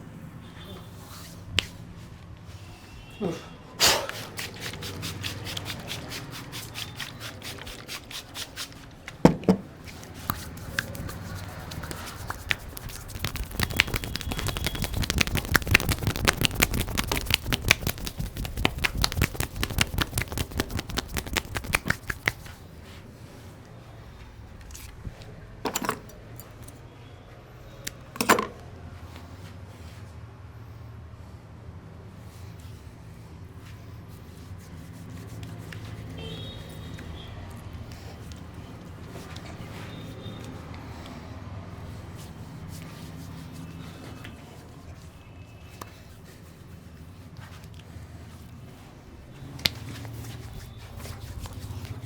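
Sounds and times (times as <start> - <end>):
rapid tapping on head: 10.3 - 22.6.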